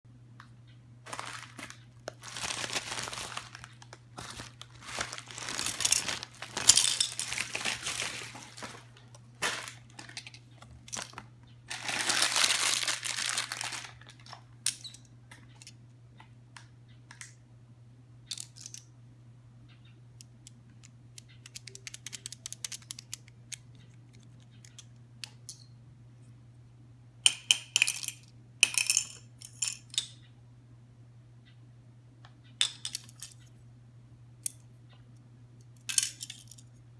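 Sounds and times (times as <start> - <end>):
plastic parts clicking and tapping: 1.1 - 11.3, 20.4 - 25.6, 32.6 - 33.4
plastic packaging crinkling and tearing: 1.1 - 14.4.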